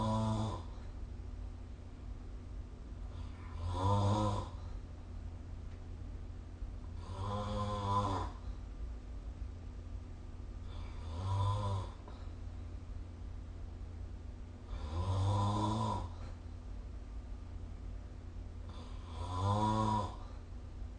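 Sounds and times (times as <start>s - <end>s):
person snoring: 0.0s - 0.8s, 3.1s - 4.7s, 7.0s - 8.4s, 10.6s - 12.2s, 14.7s - 16.4s, 18.7s - 20.4s.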